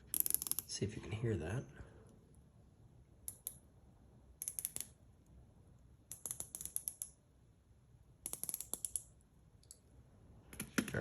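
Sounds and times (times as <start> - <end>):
watch bezel clicking: 0.1 - 0.7, 4.4 - 5.0.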